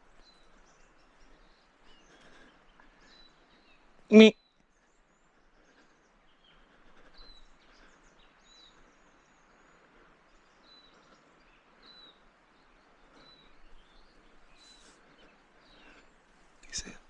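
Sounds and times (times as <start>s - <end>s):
birds chirping and whistling: 6.3s - 9.8s.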